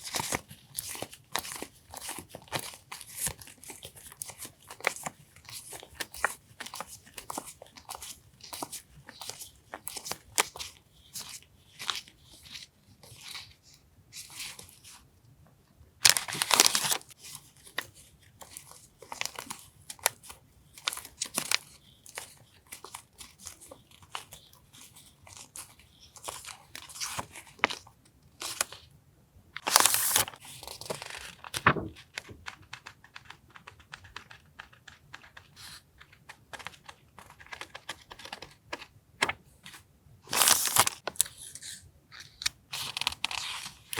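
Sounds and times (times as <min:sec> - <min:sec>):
paper rustling and crinkling: 0:00.0 - 0:13.6, 0:16.0 - 0:28.9, 0:29.6 - 0:43.9
paper tearing: 0:29.6 - 0:30.4.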